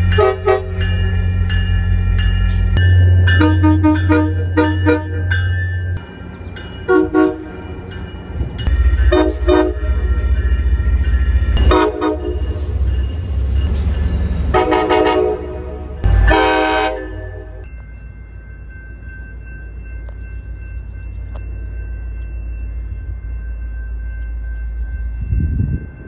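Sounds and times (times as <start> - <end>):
low rumble of moving train: 0.0 - 26.0
locomotive air horn blasts: 0.1 - 0.8, 3.4 - 5.3, 6.9 - 7.5, 9.1 - 10.1, 11.6 - 12.7, 14.5 - 17.7.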